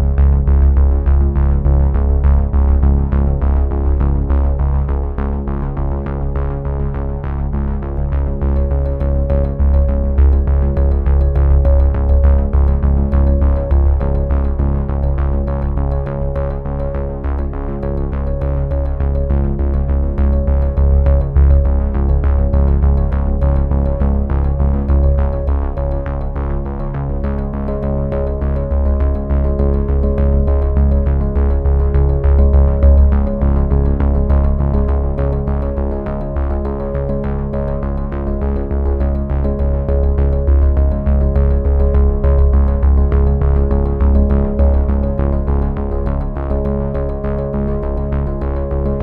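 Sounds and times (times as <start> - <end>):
synthesizer music with bass beat: 0.0 - 49.0.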